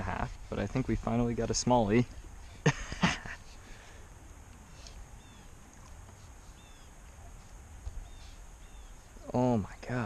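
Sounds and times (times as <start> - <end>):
small bird chirps: 4.8 - 9.4.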